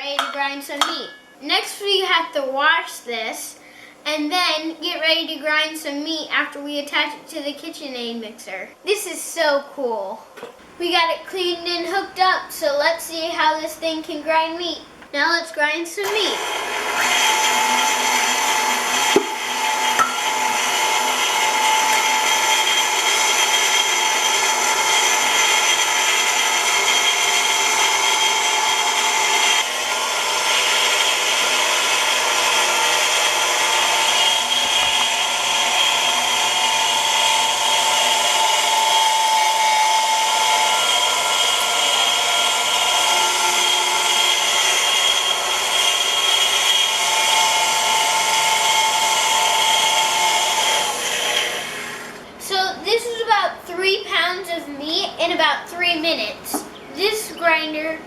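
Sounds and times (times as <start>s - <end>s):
meat grinder grinding: 16.1s - 52.3s
stand mixer motor whine: 16.3s - 52.3s.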